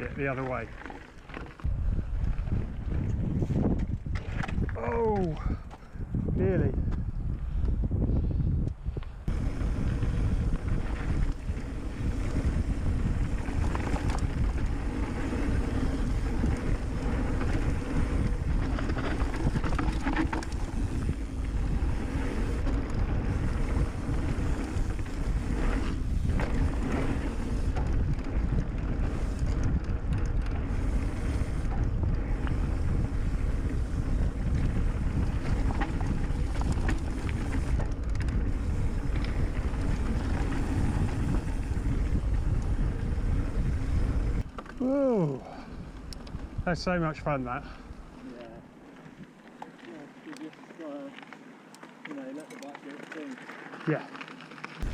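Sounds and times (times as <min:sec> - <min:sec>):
bike tyres rolling on dirt: 0:00.0 - 0:54.9
wind rushing over microphone: 0:01.6 - 0:48.1
bike knocks and rattles: 0:09.8 - 0:44.8.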